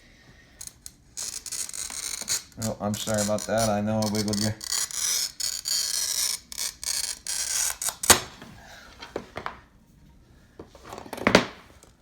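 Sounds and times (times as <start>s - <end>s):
glass cutter scoring glass: 0.6s - 8.6s.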